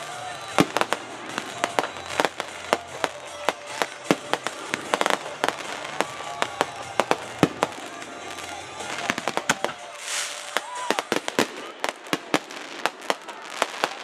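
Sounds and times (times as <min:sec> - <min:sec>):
fireworks bangs and pops: 0:00.0 - 0:14.0.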